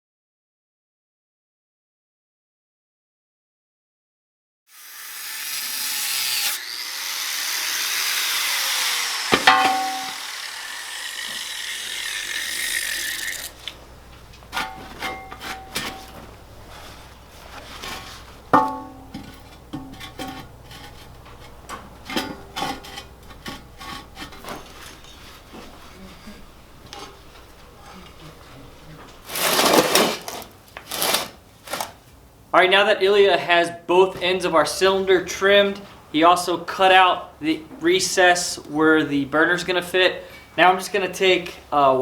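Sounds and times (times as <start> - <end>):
angle grinder cutting steel: 4.7 - 13.8
ringing metal clang: 9.4 - 10.2, 14.6 - 16.2, 18.6 - 19.2.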